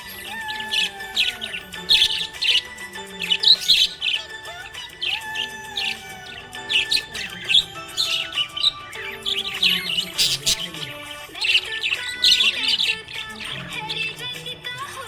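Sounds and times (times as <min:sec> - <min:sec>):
background music with held notes: 0:00.0 - 0:15.0
budgies chirping and chattering: 0:00.0 - 0:15.0.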